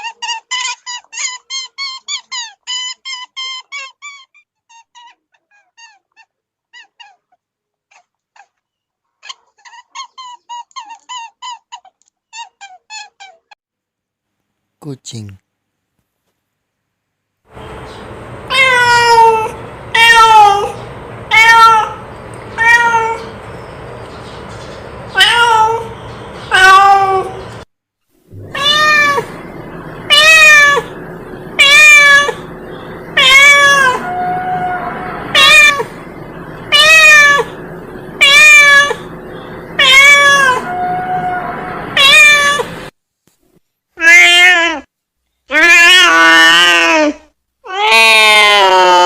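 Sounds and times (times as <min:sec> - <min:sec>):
cat meowing: 0:18.5 - 0:23.3, 0:25.2 - 0:27.4, 0:28.4 - 0:29.5, 0:30.1 - 0:31.0, 0:31.6 - 0:32.5, 0:33.2 - 0:36.0, 0:36.7 - 0:37.6, 0:38.2 - 0:39.1, 0:39.8 - 0:42.8, 0:45.5 - 0:49.0.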